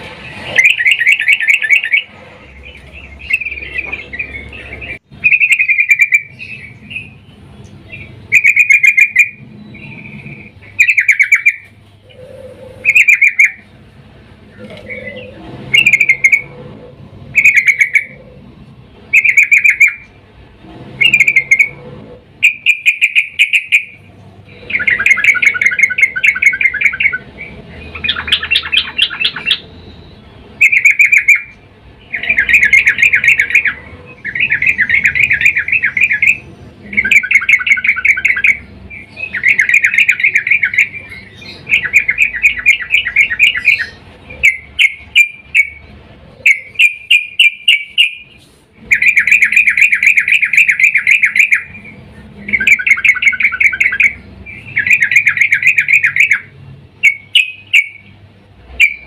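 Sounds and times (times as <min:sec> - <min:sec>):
bird chattering calls: 0:00.0 - 0:20.2, 0:21.0 - 0:59.0.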